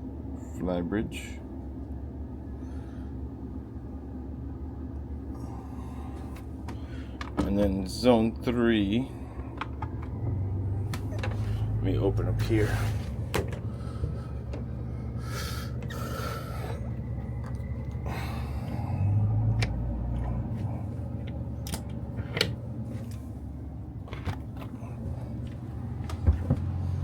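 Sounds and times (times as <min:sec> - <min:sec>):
steady low hum: 0:00.0 - 0:27.0
sharp handling clicks: 0:21.3 - 0:22.6.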